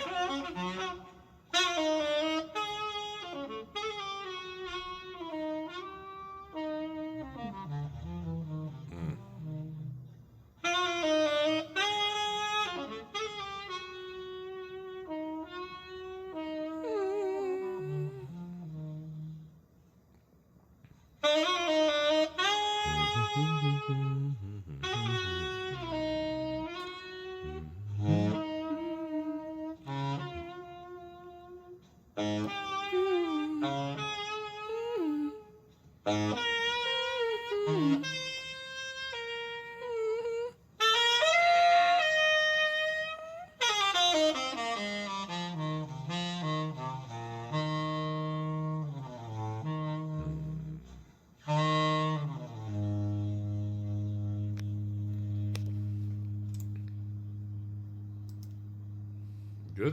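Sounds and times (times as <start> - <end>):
tenor saxophone jazz solo: 0.0 - 59.9
steady low tone: 22.7 - 29.3, 52.2 - 59.9.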